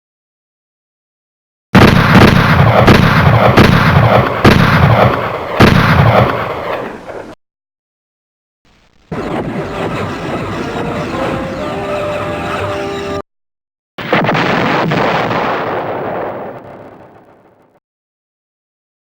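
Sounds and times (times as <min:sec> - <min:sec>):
pistol gunshots echoing: 0:01.8 - 0:06.9.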